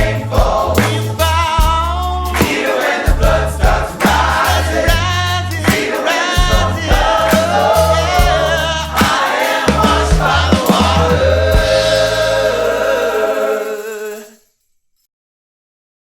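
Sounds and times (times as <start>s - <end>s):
bass line: 0.0s - 2.5s, 3.1s - 5.8s, 6.4s - 13.4s
drum hits: 0.0s - 13.0s
choir singing gospel song: 0.0s - 14.4s.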